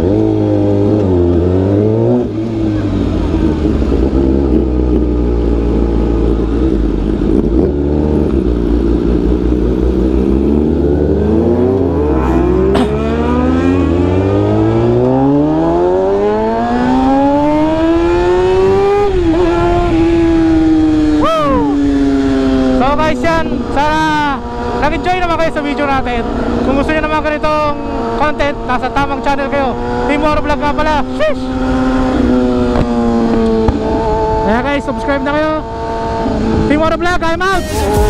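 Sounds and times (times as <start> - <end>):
vehicle engine accelerating: 0.0 - 38.0.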